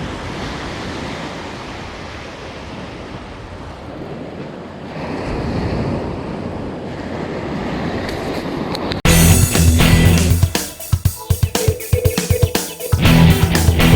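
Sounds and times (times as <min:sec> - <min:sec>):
waves washing onto beach: 0:00.0 - 0:08.9
loud electric guitar music: 0:09.1 - 0:13.9.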